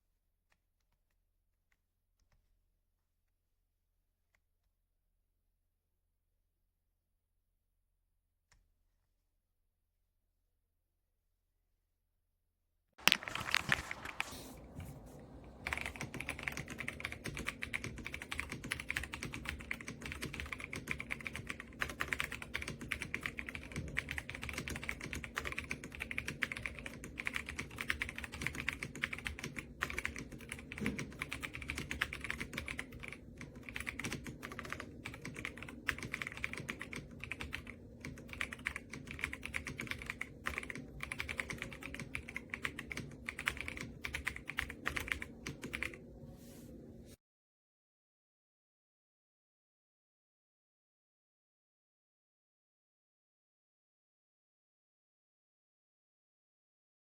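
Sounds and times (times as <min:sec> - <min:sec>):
fast typing on mechanical keyboard: 0:15.6 - 0:46.0.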